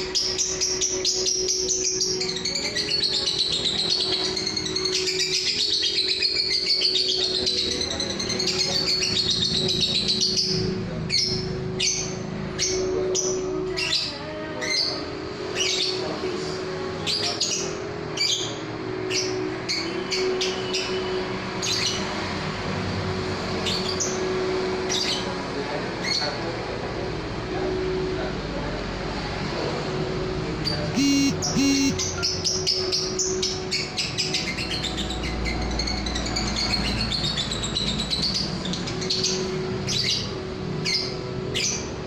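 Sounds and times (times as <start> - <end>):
bird chirps: 0.0 - 16.0, 30.9 - 41.9
bird warbling trill: 0.0 - 16.2, 31.0 - 41.9.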